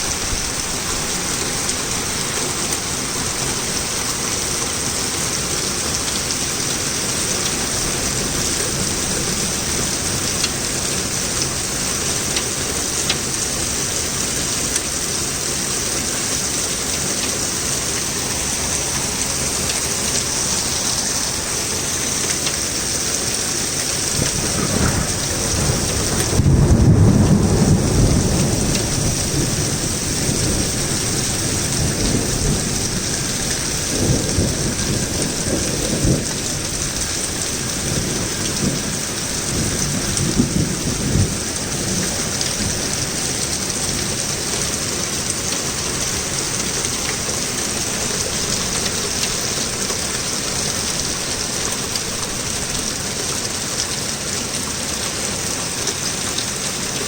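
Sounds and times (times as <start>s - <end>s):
torrential rain pouring: 0.0s - 57.0s
low rumble of thunder: 24.1s - 44.3s.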